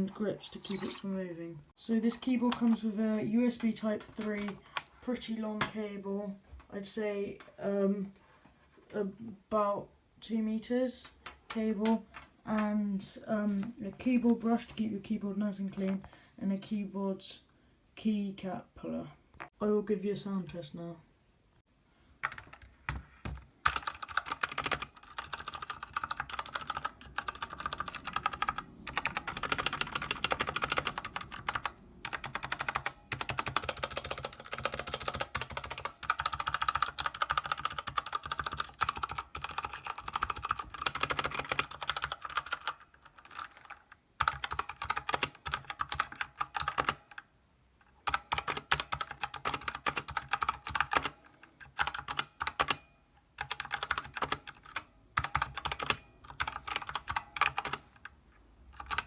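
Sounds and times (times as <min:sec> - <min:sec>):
mechanical keyboard typing: 0:23.3 - 0:47.2, 0:48.0 - 0:57.9, 0:58.7 - 0:59.0.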